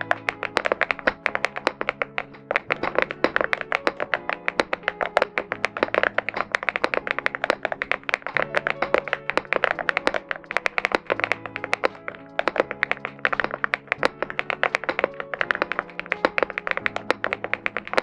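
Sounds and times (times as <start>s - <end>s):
background music: 0.0s - 18.0s
mechanical keyboard typing: 0.0s - 18.0s.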